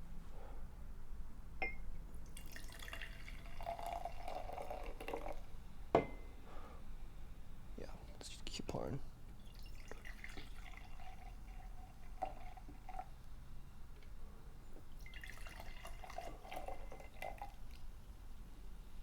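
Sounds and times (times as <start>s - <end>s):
soda pouring into a cup: 2.2s - 5.5s, 9.4s - 13.3s, 14.9s - 18.0s.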